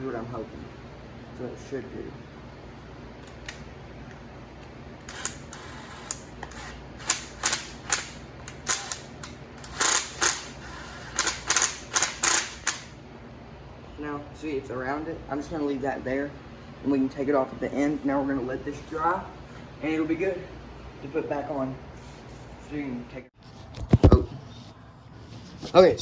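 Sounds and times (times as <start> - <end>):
small parts clicking and tapping: 6.0 - 10.5, 11.2 - 12.8.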